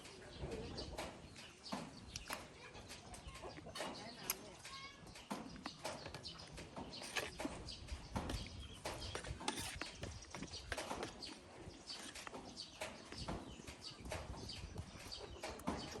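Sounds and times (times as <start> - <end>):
wind rumbling on microphone: 6.1 - 12.2, 13.0 - 16.0.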